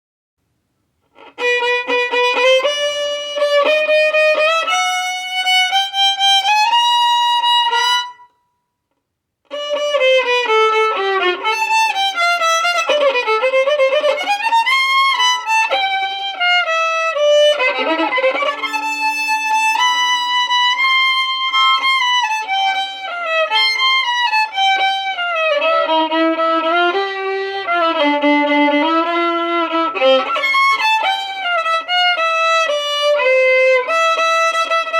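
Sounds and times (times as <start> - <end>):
solo violin slow melody: 1.0 - 8.3, 9.4 - 34.9.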